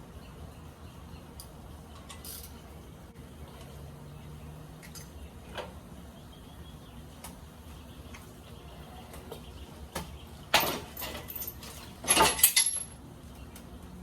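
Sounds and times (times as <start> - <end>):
metal tools clanking and rattling: 10.5 - 13.0.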